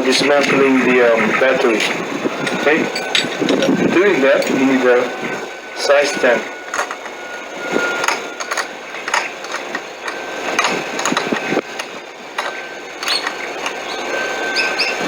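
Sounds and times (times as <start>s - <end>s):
hand tools clicking and knocking: 1.7s - 4.8s, 6.7s - 7.2s, 8.0s - 15.0s.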